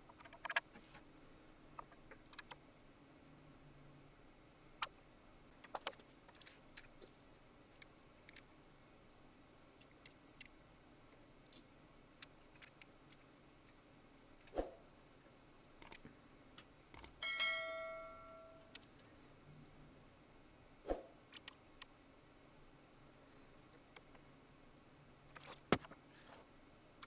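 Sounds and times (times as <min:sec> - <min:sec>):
hands and tools clicking on casing: 0:16.9 - 0:17.2
metal part ringing: 0:17.2 - 0:18.8.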